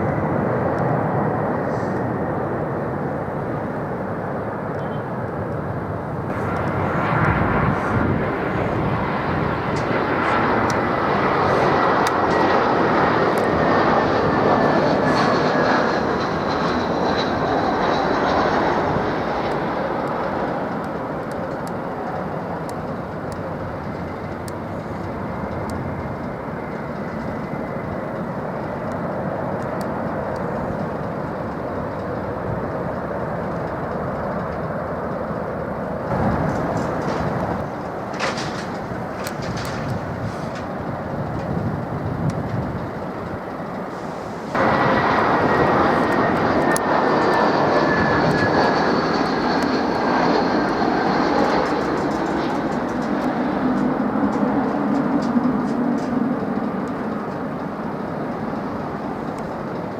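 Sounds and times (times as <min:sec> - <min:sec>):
jet engine roar: 0:00.0 - 0:59.9
high whine gliding down: 0:06.3 - 0:19.7, 0:44.0 - 0:53.1.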